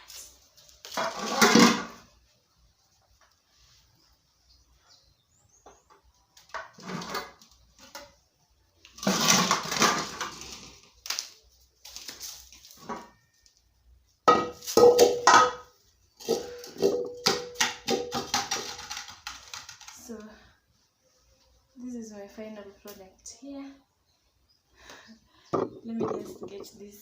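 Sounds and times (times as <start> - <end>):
metal pot and utensils clattering: 1.0 - 2.0, 14.3 - 19.6.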